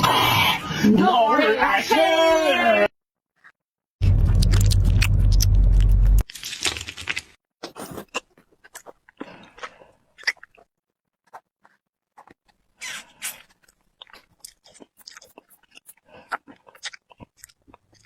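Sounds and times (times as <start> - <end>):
person eating cake: 6.3 - 18.0.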